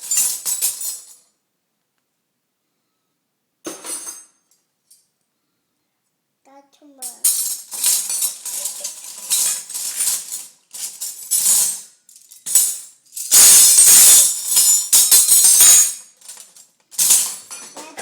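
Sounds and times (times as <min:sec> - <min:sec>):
metal spoons clattering: 0:07.0 - 0:18.0.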